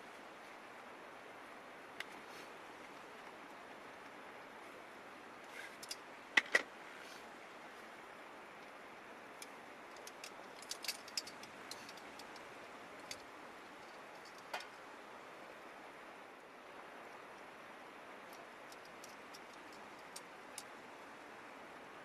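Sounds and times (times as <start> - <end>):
sharp clicks and knocks: 5.8 - 6.7.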